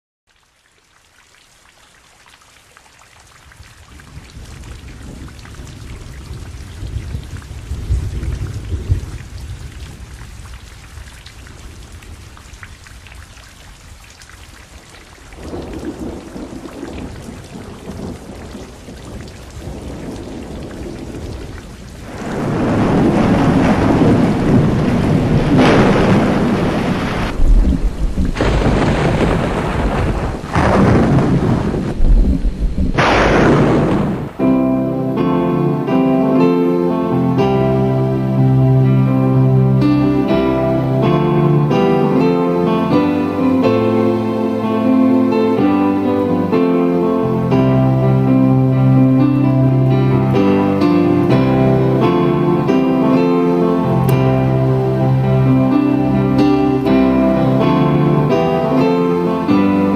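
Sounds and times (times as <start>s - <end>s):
steady rain: 0.3s - 59.9s
rolling thunder: 3.9s - 12.4s, 15.4s - 34.9s
sharp thunder crack: 15.4s - 34.8s.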